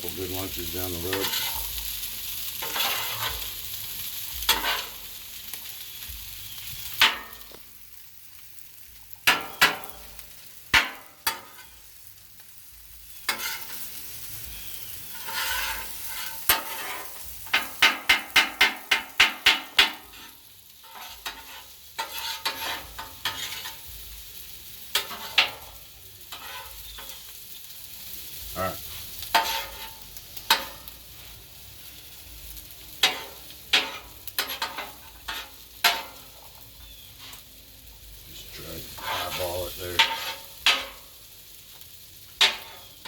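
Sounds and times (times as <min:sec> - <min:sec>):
food sizzling on a griddle: 0:00.0 - 0:43.0
metal spatulas scraping steel: 0:01.2 - 0:01.7, 0:02.6 - 0:03.4, 0:04.5 - 0:04.9, 0:13.3 - 0:13.9, 0:15.1 - 0:17.2, 0:20.0 - 0:23.8, 0:24.9 - 0:25.6, 0:26.3 - 0:27.1, 0:29.3 - 0:30.8, 0:33.0 - 0:36.2, 0:38.9 - 0:41.0, 0:42.4 - 0:42.9.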